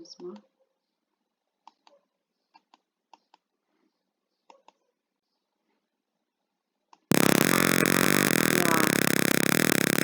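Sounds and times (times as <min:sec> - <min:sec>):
electronic buzzer tone: 0:07.1 - 0:10.0.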